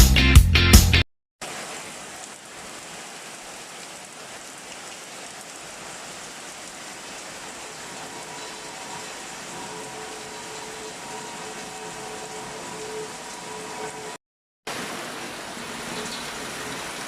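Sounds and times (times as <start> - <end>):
background music: 0.0 - 1.0
heavy rain: 1.4 - 17.0.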